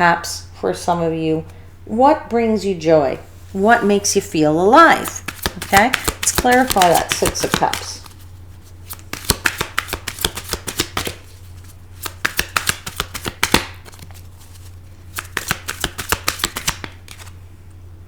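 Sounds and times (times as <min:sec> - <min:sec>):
cards being shuffled: 0:04.9 - 0:17.4.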